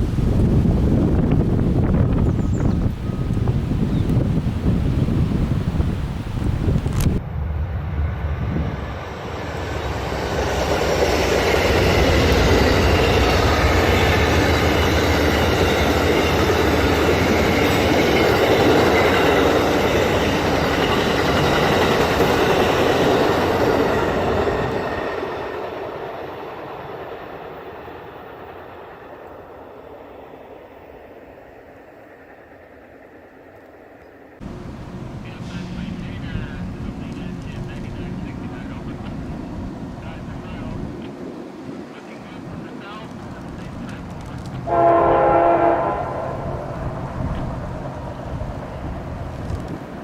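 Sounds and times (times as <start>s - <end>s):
train wheels clicking over rail joints: 42.9s - 44.7s.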